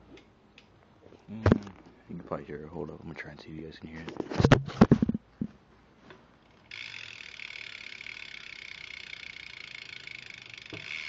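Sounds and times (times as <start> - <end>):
bicycle freewheel hub clicking: 6.4 - 11.0.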